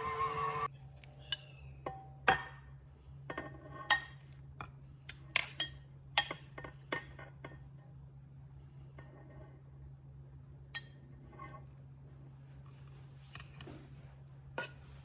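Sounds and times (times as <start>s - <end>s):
steady hum: 0.0s - 0.7s.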